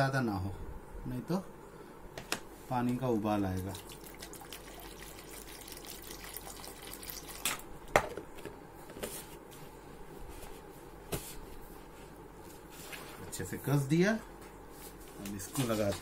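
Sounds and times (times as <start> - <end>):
water pouring into plastic container: 3.5 - 7.6.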